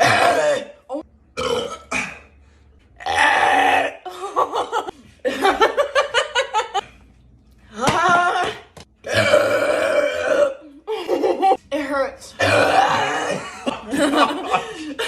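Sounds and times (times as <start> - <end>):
person burping: 0.0 - 2.4, 3.0 - 4.1, 9.0 - 10.9, 12.4 - 13.9
laughter: 4.1 - 6.8, 10.9 - 11.6, 13.4 - 15.0.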